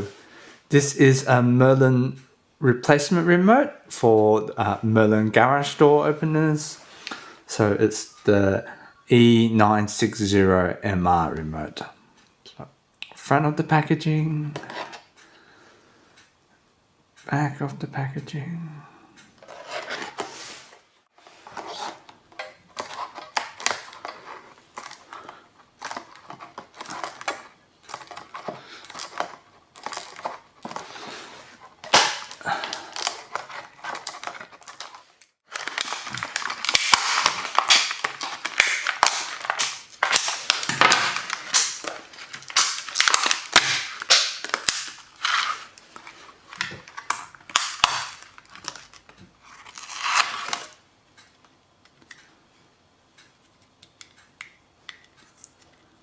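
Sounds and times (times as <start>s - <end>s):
packaging crackling and snapping: 21.8s - 50.8s.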